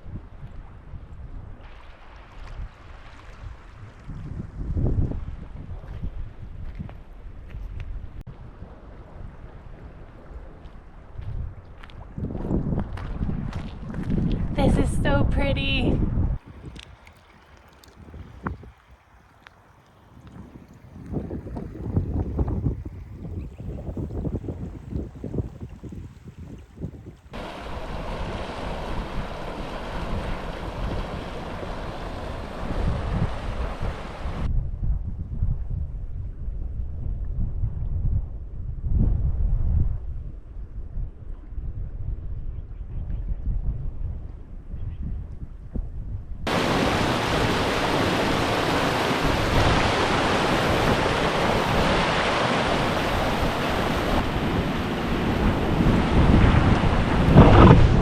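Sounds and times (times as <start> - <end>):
wind buffeting microphone: 0.0 - 58.0
river water rushing: 27.4 - 34.5, 46.5 - 57.7.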